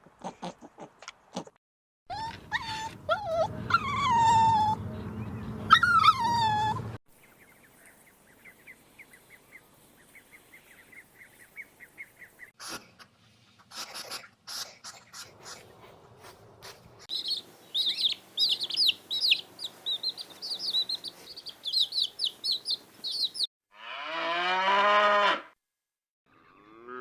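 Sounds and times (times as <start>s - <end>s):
animal whining: 2.1s - 7.0s.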